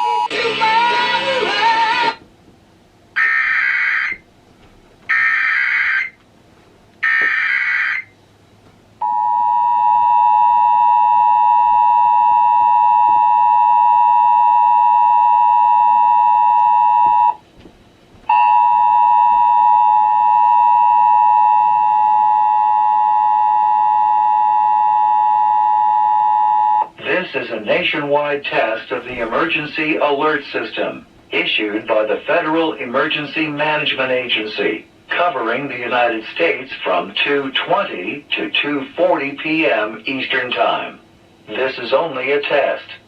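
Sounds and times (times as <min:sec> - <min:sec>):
two-tone attention signal: 0:00.0 - 0:00.4
screeching data bursts: 0:03.2 - 0:04.2, 0:05.1 - 0:06.2, 0:07.0 - 0:08.1.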